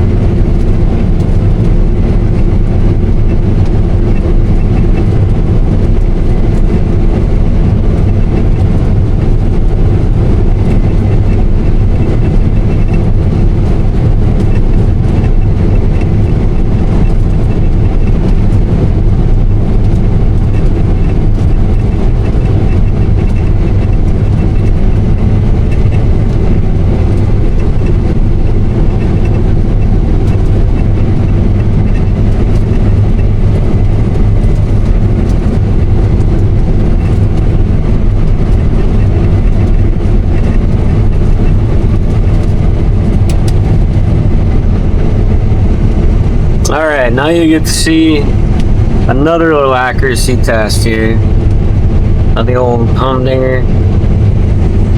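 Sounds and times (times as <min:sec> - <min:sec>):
combine harvester droning: 0:00.0 - 0:54.9.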